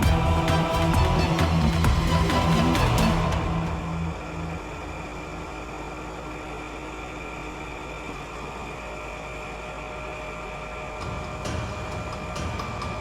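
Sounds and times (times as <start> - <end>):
faint high whines: 2.3 - 11.2.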